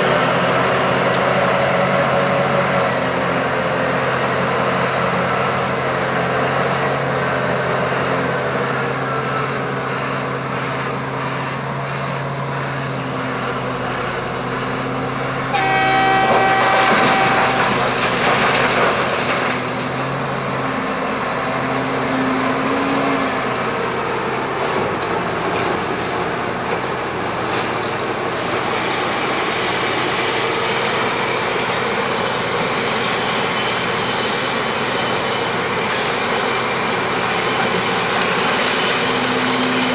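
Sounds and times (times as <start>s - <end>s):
heavy diesel engine running: 0.0s - 39.9s
horn sounding: 15.5s - 18.0s.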